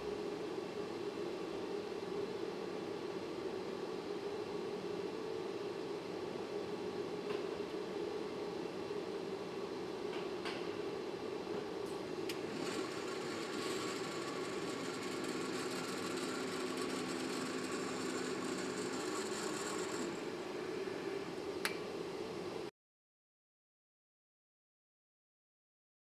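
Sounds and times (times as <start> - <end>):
industrial machinery humming: 11.9 - 21.6
hiss: 12.5 - 20.2.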